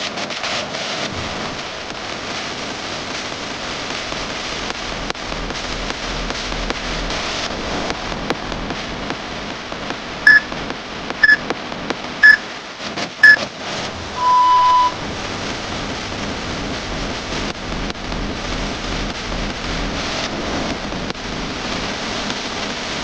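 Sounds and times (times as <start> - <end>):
steady rain-like hiss: 0.0 - 14.2, 14.8 - 23.0
timer countdown beeps: 10.3 - 10.5, 11.2 - 11.4, 12.2 - 12.4, 14.2 - 15.0.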